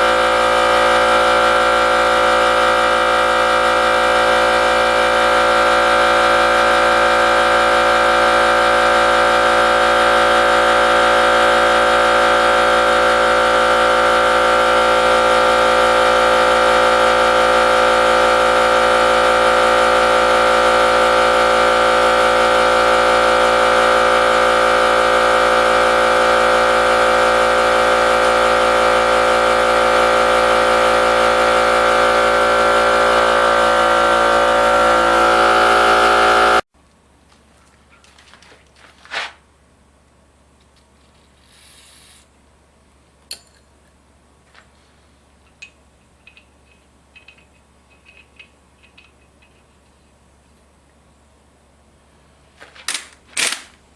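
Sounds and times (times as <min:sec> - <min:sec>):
mechanical drone with high whine: 0:00.0 - 0:36.6.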